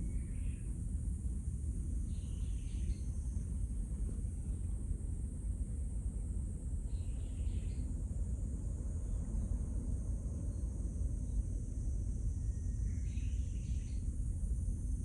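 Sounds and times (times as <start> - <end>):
high-pitched insect drone: 2.1 - 3.6, 10.2 - 15.0
faint chirps: 12.4 - 14.1.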